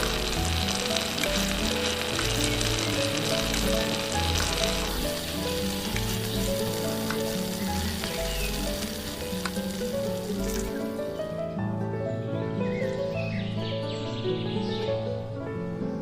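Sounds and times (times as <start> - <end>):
small crackles and pops: 0.0 - 5.0, 5.6 - 10.8
food sizzling in oil: 0.0 - 11.1.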